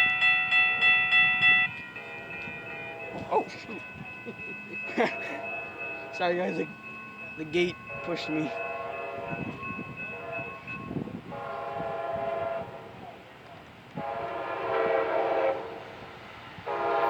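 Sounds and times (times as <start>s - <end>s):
locomotive air horn blasts: 1.1s - 3.6s, 5.0s - 6.6s, 7.9s - 13.2s, 14.0s - 16.0s, 16.6s - 17.0s.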